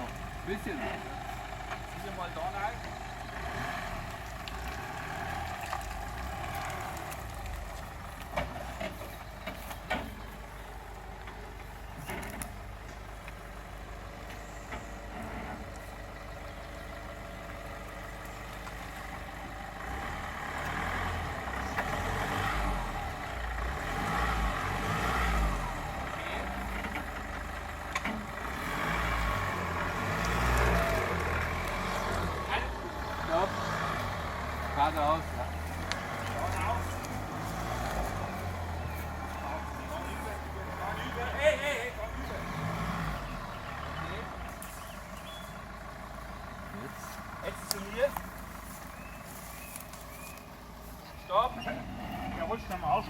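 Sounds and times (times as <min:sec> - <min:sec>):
engine idling: 0:00.0 - 0:53.0.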